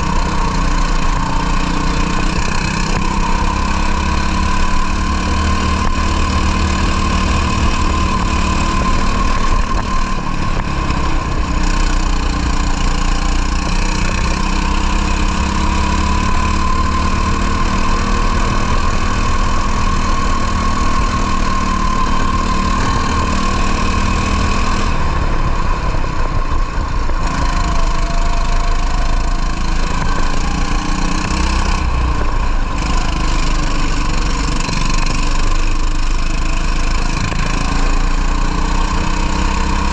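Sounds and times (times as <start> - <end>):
kart engine running hard: 0.0 - 39.9.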